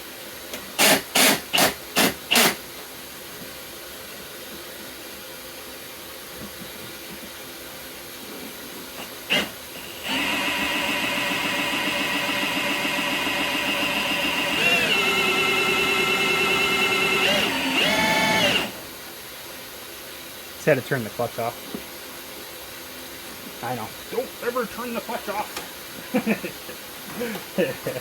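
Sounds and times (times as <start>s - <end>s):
cordless drill motor running: 0.8s - 2.6s, 9.3s - 18.8s
faint steady hiss: 19.0s - 28.0s.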